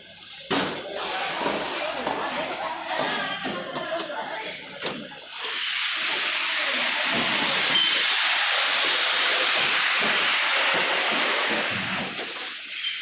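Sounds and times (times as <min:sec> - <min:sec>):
loud steady hiss: 0:04.6 - 0:13.0.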